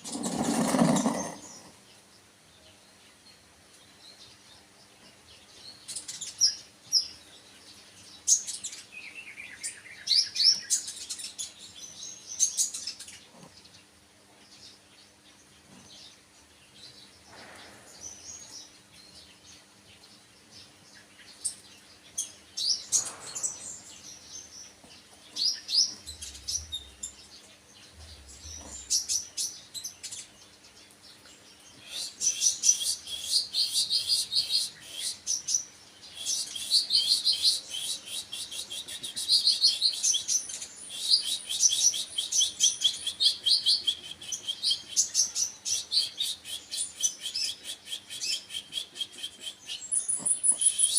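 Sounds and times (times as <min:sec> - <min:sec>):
bird twittering chirps: 0:00.0 - 0:01.8, 0:20.9 - 0:50.9.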